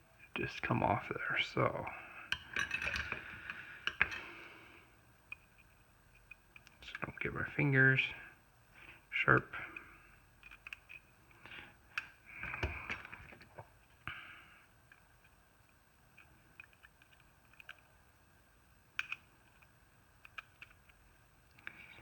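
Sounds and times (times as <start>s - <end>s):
toy car parts clicking: 10.4s - 11.0s, 19.0s - 21.0s.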